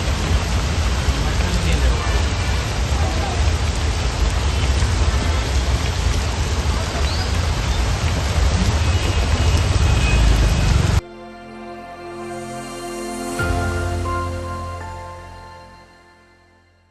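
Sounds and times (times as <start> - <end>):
heavy rain pouring: 0.0 - 11.0, 12.2 - 15.6
music: 11.0 - 16.9.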